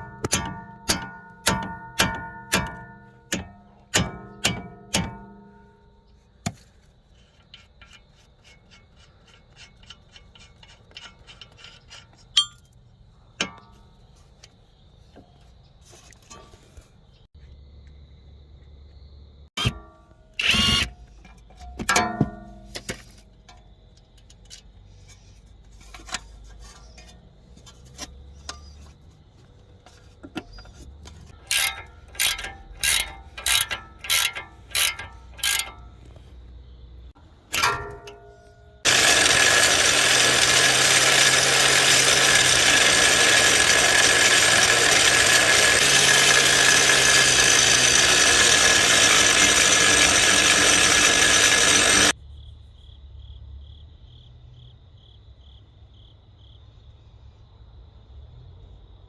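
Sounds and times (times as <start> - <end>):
hand tools clicking on metal: 0.0 - 5.7, 7.2 - 12.8, 30.4 - 36.3, 37.5 - 52.2
ratchet wrench strokes: 7.2 - 12.6, 20.4 - 20.9, 31.3 - 36.2, 38.8 - 52.1
power tool running: 20.4 - 21.0, 31.4 - 35.7, 38.8 - 52.2.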